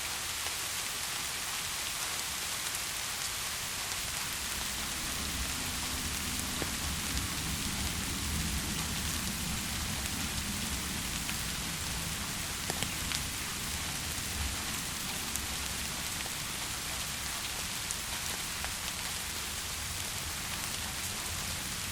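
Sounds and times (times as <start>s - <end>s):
steady rain hiss: 0.0s - 21.9s
sharp raindrop ticks: 3.9s - 21.8s
low rumble: 4.0s - 15.6s.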